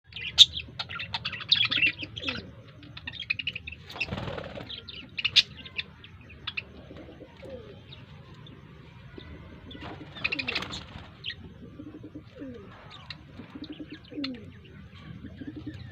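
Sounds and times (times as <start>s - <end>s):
birds chirping: 0.1s - 15.9s
wings fluttering: 3.8s - 4.9s, 9.8s - 11.4s.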